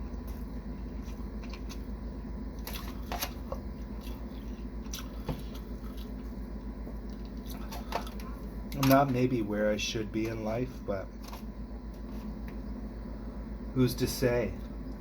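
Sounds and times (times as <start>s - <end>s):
low hum: 0.0s - 15.0s
person chewing: 0.2s - 8.5s.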